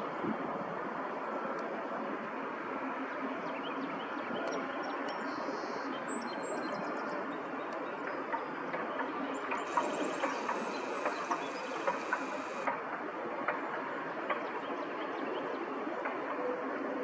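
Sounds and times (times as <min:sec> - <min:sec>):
faint bird chirps: 0:09.7 - 0:12.6.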